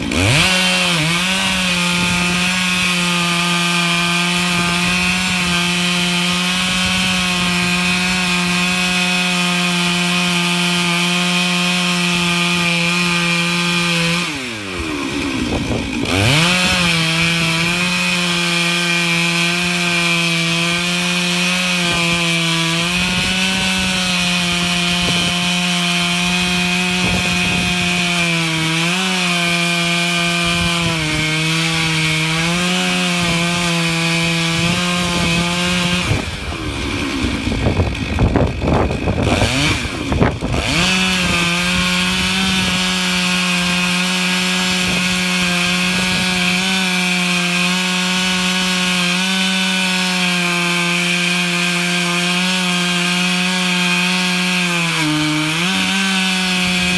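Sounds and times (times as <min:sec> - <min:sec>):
chainsaw cutting through log: 0:00.0 - 0:56.9.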